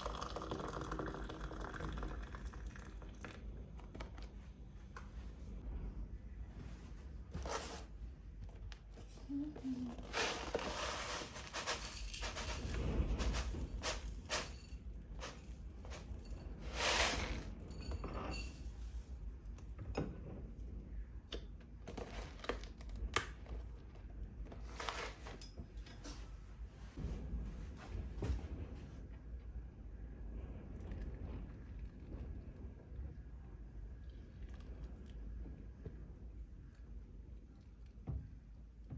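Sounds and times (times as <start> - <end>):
rustling: 8.9 - 17.8.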